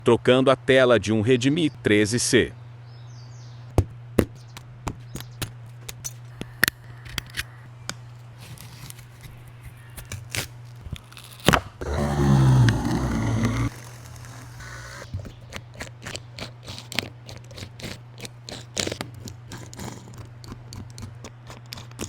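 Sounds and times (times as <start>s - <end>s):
whirring falling in pitch: 11.8s - 15.0s
steady low hum: 11.8s - 16.6s
tools clicking and scraping phone: 13.7s - 22.0s.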